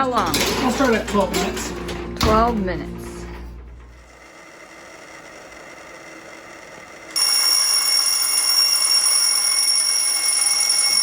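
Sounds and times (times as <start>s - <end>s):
kitchen timer high electronic tone: 3.9s - 11.0s.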